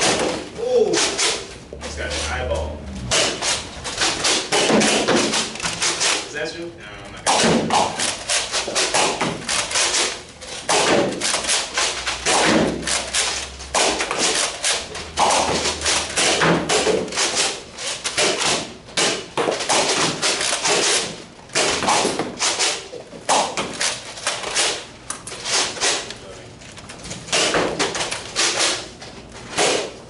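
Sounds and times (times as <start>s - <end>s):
foam balls thudding on surfaces: 4.0s - 6.2s, 7.2s - 13.0s, 13.6s - 23.8s.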